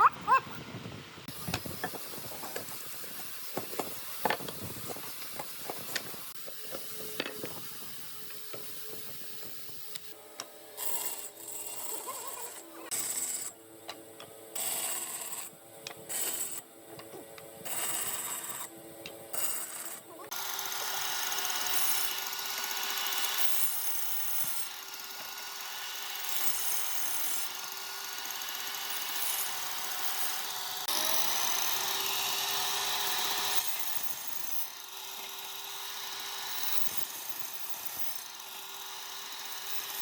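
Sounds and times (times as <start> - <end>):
hiss: 1.3 - 10.0
power tool motor bursts: 1.3 - 13.5, 14.5 - 15.5, 16.1 - 16.6, 17.6 - 40.0.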